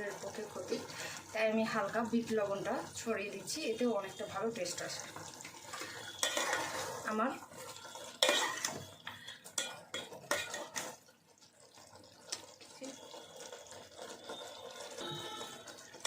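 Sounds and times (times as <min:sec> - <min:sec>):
metal spoon scraping in pan: 0:05.7 - 0:11.0.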